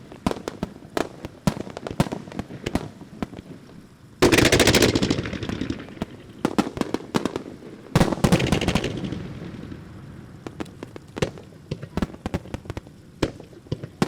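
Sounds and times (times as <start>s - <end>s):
fireworks crackle: 0.0s - 14.0s
fireworks shell bursts: 4.2s - 9.7s.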